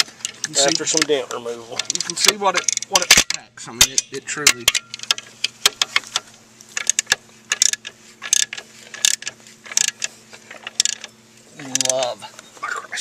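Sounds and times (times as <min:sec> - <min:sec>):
hand ratchet clicking: 0:01.8 - 0:11.1, 0:11.7 - 0:12.1.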